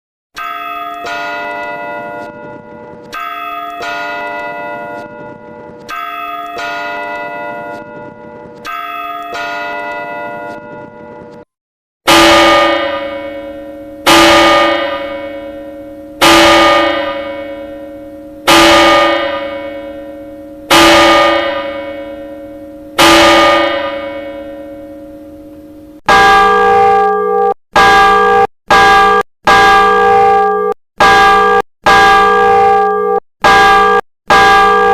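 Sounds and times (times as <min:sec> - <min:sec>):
church bells ringing: 0:00.4 - 0:11.5, 0:12.1 - 0:34.9.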